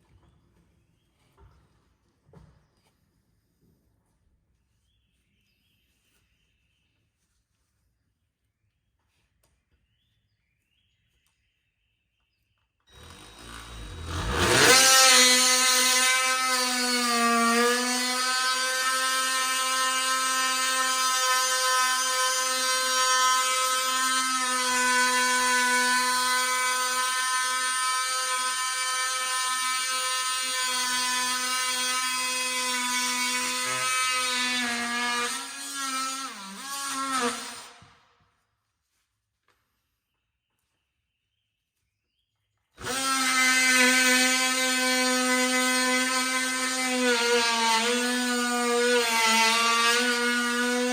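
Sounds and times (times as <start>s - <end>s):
power tool motor whine: 12.9s - 37.8s, 42.8s - 50.9s.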